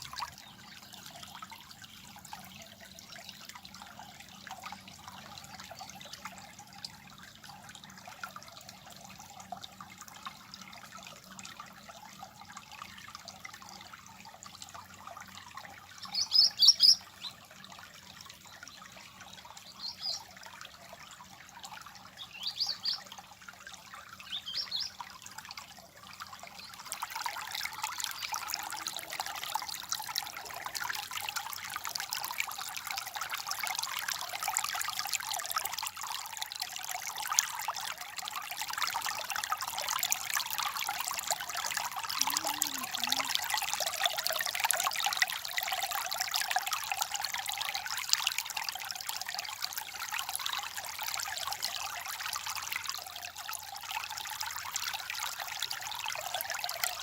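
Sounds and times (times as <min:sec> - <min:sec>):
stream trickling and babbling: 0:00.0 - 0:57.0
bird chirping: 0:16.1 - 0:17.4, 0:24.2 - 0:25.0.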